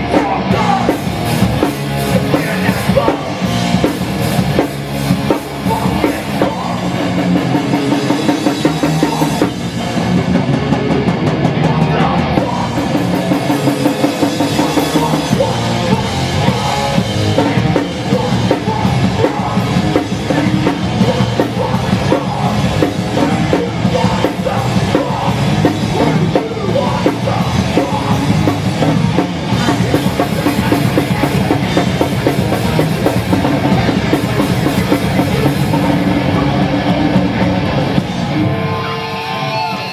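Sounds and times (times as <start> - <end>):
punk band playing live: 0.0 - 39.9.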